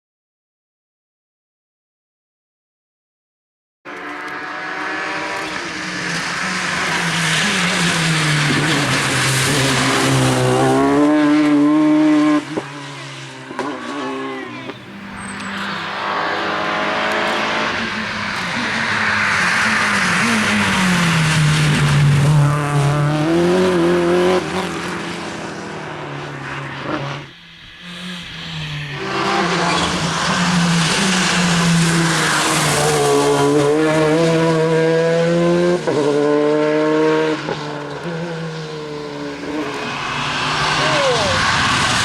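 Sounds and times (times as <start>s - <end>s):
rally car engines revving: 3.9s - 42.0s
tyre squeal: 14.7s - 20.5s, 29.0s - 33.4s.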